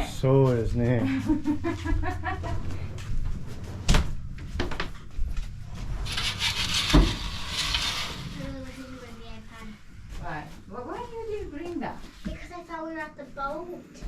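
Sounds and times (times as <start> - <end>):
wood scraping rub: 5.8 - 9.0.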